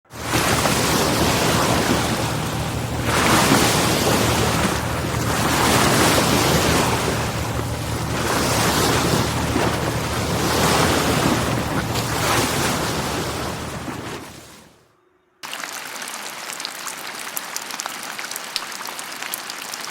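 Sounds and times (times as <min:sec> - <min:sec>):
ocean waves washing in: 0:00.1 - 0:14.8
low steady hum: 0:00.2 - 0:15.4.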